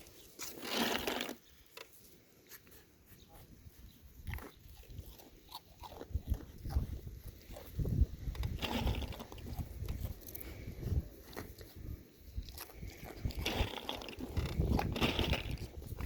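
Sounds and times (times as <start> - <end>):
animal crunching crackers: 4.2 - 16.0.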